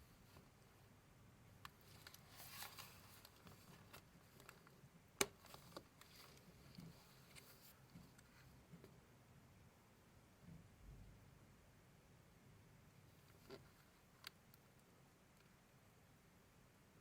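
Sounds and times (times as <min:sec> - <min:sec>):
paper rustling: 0:01.9 - 0:04.7.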